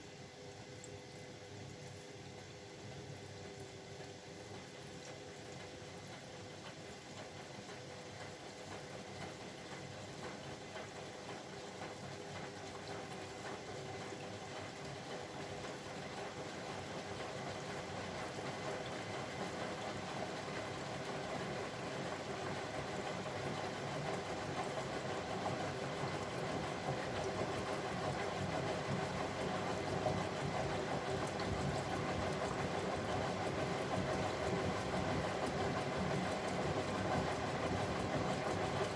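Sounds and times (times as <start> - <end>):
washing machine running: 0.0 - 38.9.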